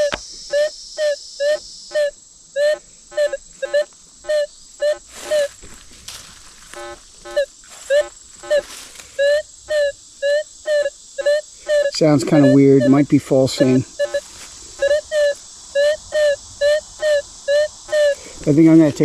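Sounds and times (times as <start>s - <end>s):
crickets humming: 0.0s - 19.0s
metal detector beeps: 11.8s - 14.2s.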